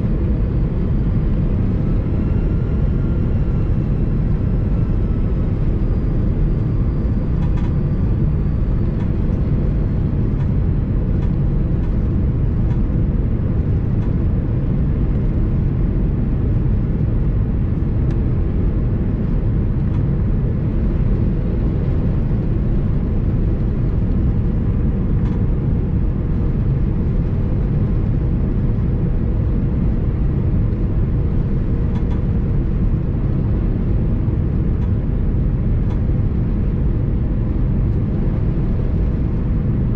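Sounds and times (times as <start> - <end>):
jet engine cabin rumble: 0.0 - 39.9.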